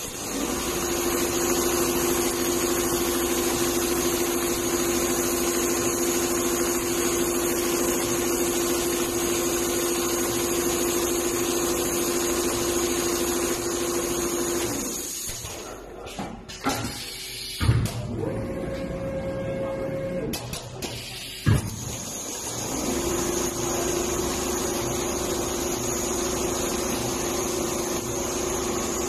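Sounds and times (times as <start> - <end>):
sewing machine humming: 0.0 - 15.3, 21.9 - 29.0.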